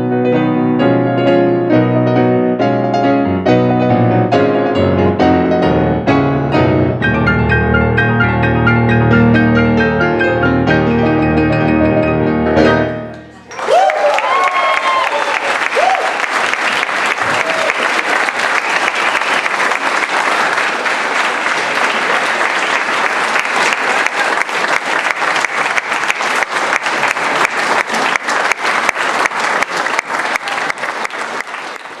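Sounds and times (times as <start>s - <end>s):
audience applauding: 13.4s - 32.0s.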